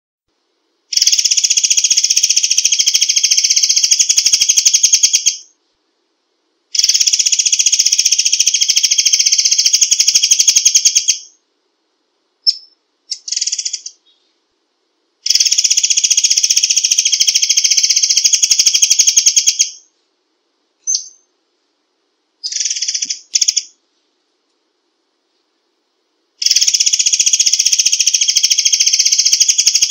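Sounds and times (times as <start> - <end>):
songbird rattling trills: 0.9 - 5.5, 6.8 - 11.3, 12.4 - 14.0, 15.2 - 19.8, 20.8 - 21.3, 22.4 - 23.8, 26.4 - 29.9.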